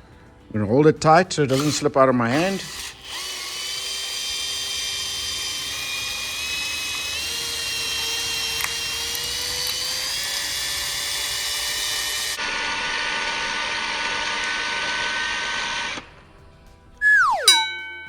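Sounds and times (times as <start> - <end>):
electric drill whining: 1.5 - 16.2.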